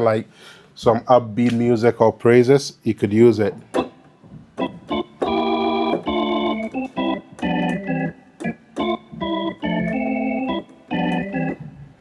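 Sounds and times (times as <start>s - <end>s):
synthesizer organ chords: 3.7s - 12.0s.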